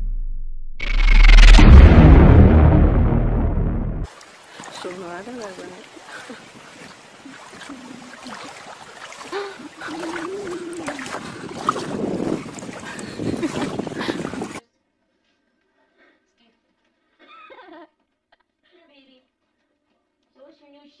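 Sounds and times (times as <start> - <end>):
loud rumbling burst of noise: 0.0 - 4.1
animal wavering calls: 9.2 - 11.4.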